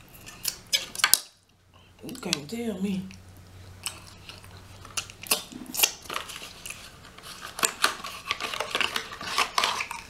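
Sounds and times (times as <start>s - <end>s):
chewing with wet clicks and smacks: 3.1s - 6.8s.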